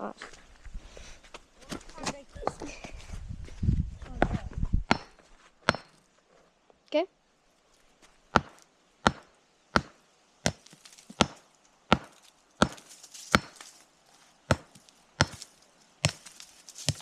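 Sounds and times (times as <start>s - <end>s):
hammer striking rock: 4.9s - 6.0s, 8.3s - 13.7s, 14.5s - 16.3s.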